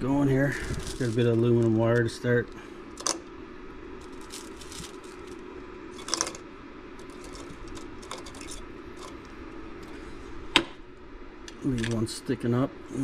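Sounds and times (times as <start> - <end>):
steady low hum: 0.0 - 13.0
aluminum wire clinking: 2.9 - 3.3, 4.0 - 6.4, 7.0 - 9.3.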